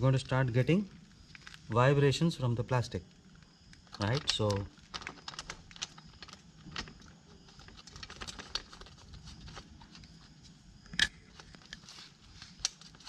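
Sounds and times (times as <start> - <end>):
small metal parts clicking: 3.7 - 6.9.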